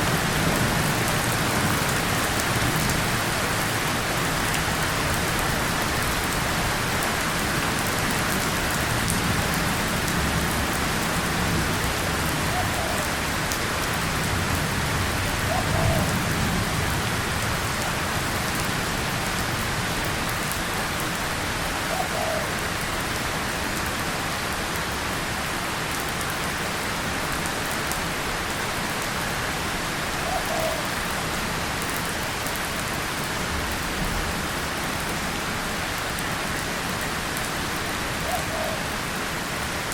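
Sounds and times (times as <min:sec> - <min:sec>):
heavy rain on tin and leaves: 0:00.0 - 0:39.9.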